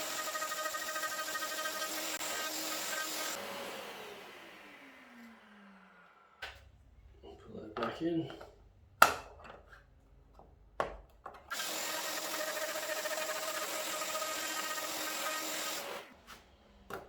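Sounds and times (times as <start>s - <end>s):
router running: 0.0s - 6.3s, 11.5s - 16.1s.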